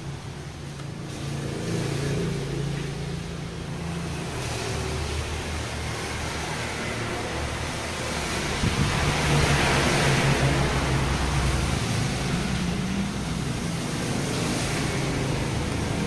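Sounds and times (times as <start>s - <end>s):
rushing noise: 3.9s - 16.0s.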